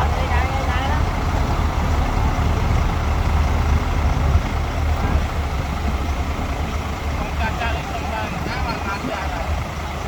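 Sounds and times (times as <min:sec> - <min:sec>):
diesel engine deep rumble: 0:00.0 - 0:10.0.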